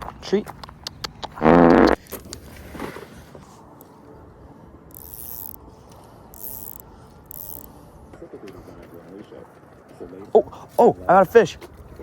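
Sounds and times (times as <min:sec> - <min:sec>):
fishing reel gears whirring: 0:04.9 - 0:05.7, 0:06.3 - 0:07.8.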